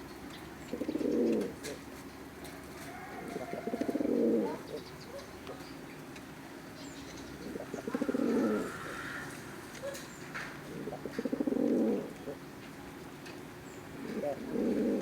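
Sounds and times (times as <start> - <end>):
pigeon cooing: 0.7 - 1.8, 2.8 - 4.8, 7.4 - 12.4, 14.0 - 15.0.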